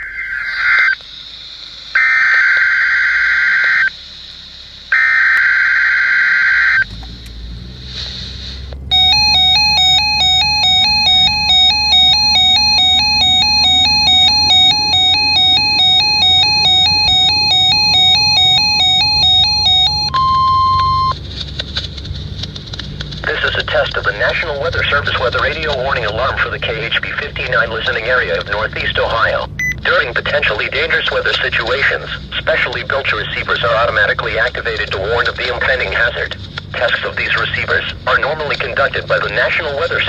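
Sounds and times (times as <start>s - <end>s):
buzzing digital data bursts: 8.9s - 21.2s
electronic alert tone: 8.9s - 21.2s.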